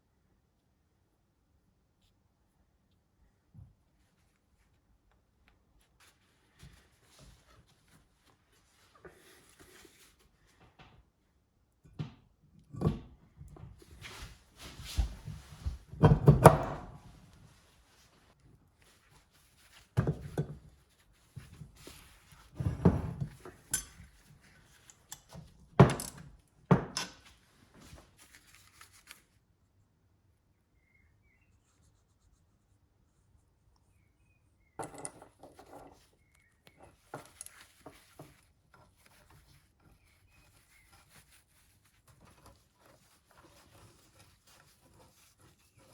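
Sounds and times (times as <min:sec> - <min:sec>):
rustling: 0:27.2 - 0:29.4, 0:35.9 - 0:45.9.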